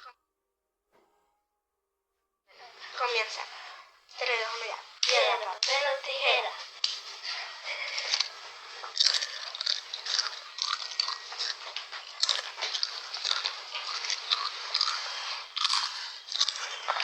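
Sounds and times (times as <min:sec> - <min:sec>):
crunching potato chips: 0:06.8 - 0:17.0.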